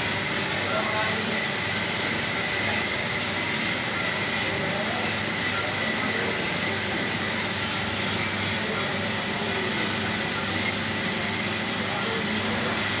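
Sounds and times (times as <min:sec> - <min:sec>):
machine running with high whine: 0:00.0 - 0:13.0.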